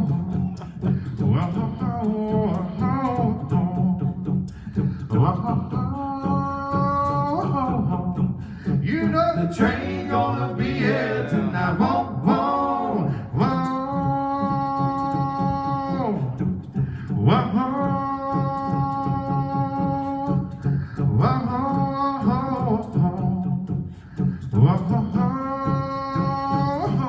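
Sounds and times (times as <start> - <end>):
vocal group singing chords: 7.4 - 23.0.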